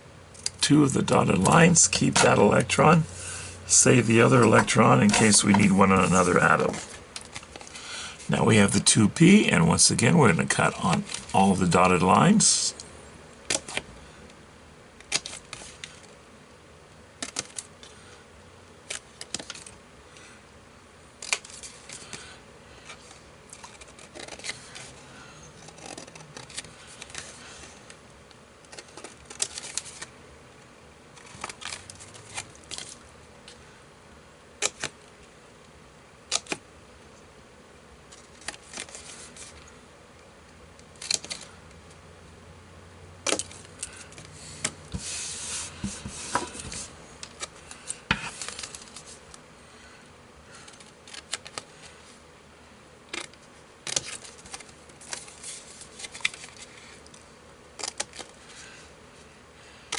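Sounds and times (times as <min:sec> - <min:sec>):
scissors snipping paper: 0:23.5 - 0:24.9, 0:25.5 - 0:27.4.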